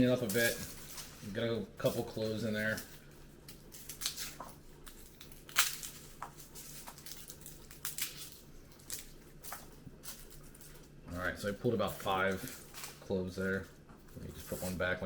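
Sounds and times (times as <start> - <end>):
papery garlic skins crackling: 0.0 - 15.0
garlic cloves snapping: 3.4 - 9.6.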